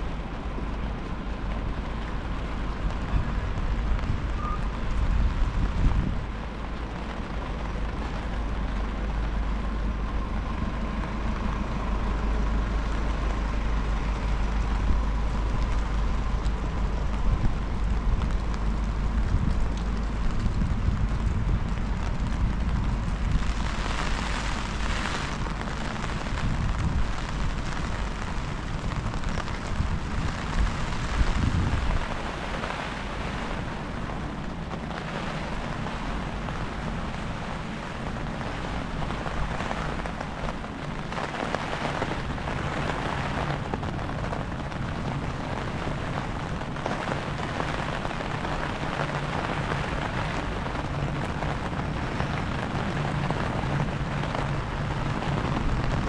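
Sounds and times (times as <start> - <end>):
rain falling: 0.0 - 56.0
wind buffeting microphone: 0.0 - 56.0.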